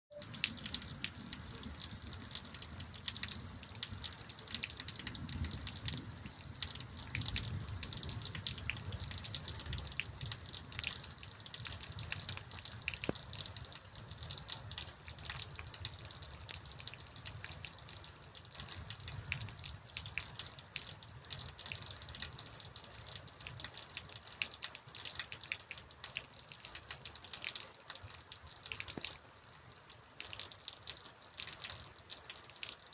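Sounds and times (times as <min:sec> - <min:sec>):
rain drops ticking: 0:00.1 - 0:32.9.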